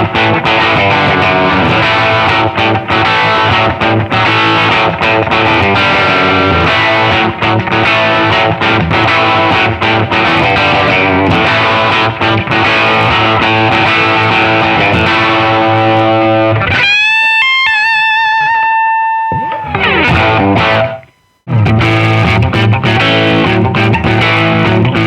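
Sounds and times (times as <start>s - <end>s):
electric guitar chords and riffing: 0.0s - 25.0s
bent guitar lead note with vibrato: 17.7s - 22.5s.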